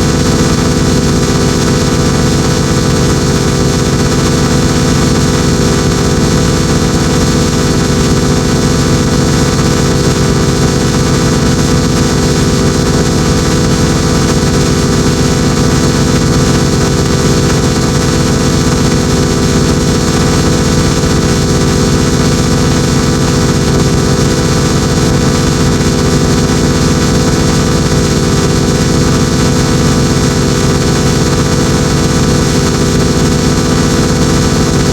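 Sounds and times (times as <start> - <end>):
distorted wall of noise: 0.0 - 34.9.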